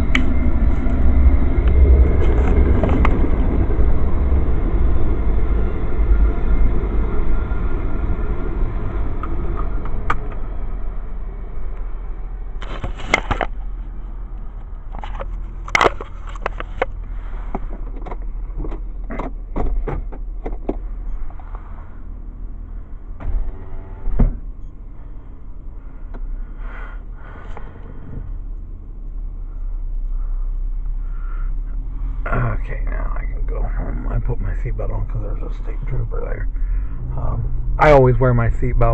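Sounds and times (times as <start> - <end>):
car engine rumble: 0.0 - 38.9
sharp clicks and knocks: 14.4 - 21.4.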